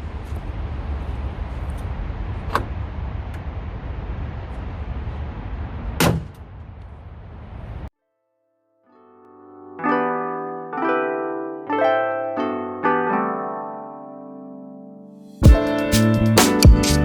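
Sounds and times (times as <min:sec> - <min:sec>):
highway traffic rumble: 0:00.0 - 0:07.9.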